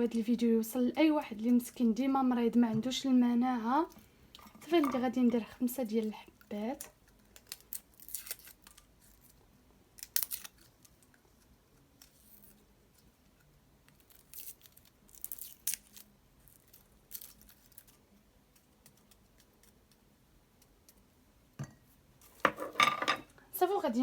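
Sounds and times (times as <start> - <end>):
soft crinkling and crunching: 0.7 - 21.2
dishes clattering: 4.4 - 5.1, 22.4 - 23.3.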